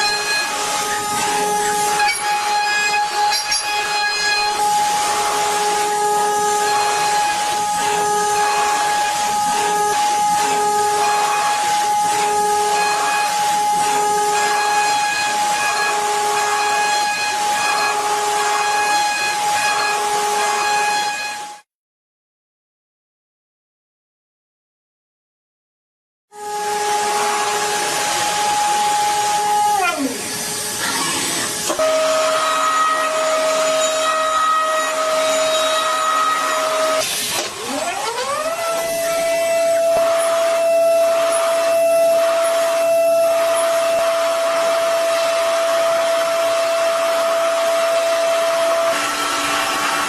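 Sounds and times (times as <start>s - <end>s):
machine tool whining: 0.0s - 21.6s, 26.4s - 50.0s.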